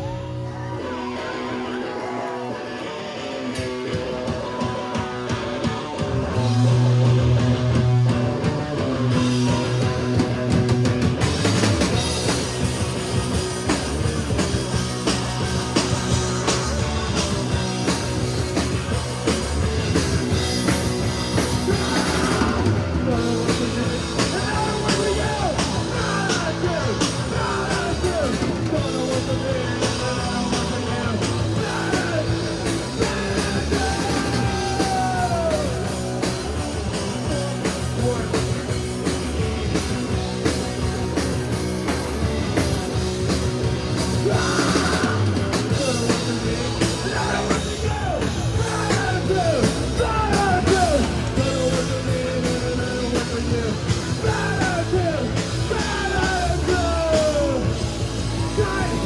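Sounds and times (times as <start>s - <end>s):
live rock band playing: 0.0s - 59.0s
person singing: 21.5s - 36.3s, 44.1s - 57.7s.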